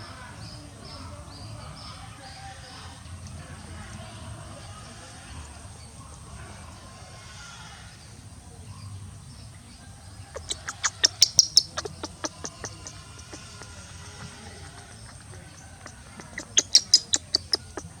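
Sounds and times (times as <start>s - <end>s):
sharp high-pitched animal chirps: 10.4s - 18.0s.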